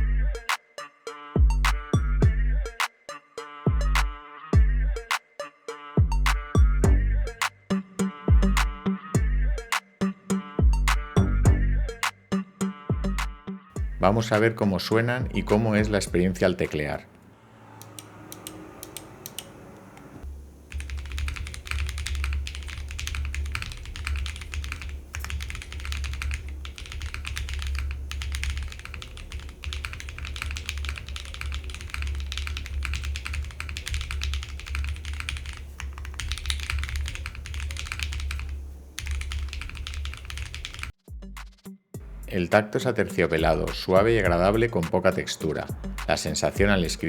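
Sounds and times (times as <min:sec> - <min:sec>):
mechanical keyboard typing: 0:17.9 - 0:19.5, 0:20.7 - 0:40.9.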